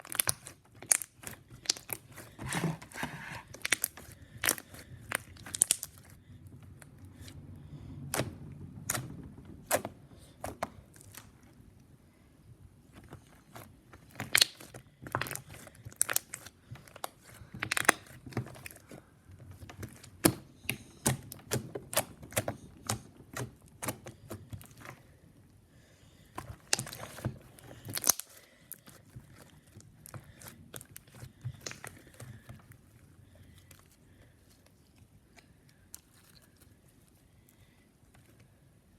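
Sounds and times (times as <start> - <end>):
slime crackling and popping: 0.0 - 6.2, 12.9 - 19.0, 26.4 - 32.6.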